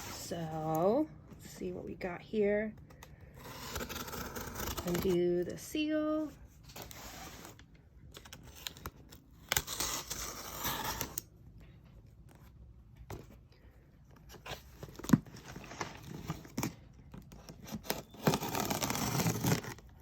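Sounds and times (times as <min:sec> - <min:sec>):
package tearing open: 0:17.4 - 0:20.0.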